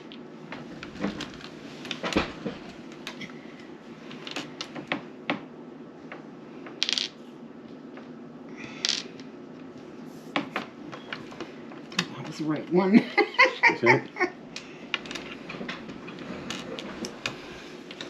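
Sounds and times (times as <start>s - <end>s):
game pieces clattering on tabletop: 6.8s - 7.2s, 8.8s - 9.2s.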